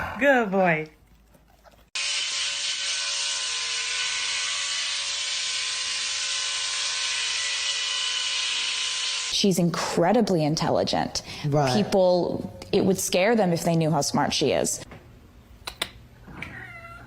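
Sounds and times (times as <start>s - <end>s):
machine whirring: 2.0s - 9.4s.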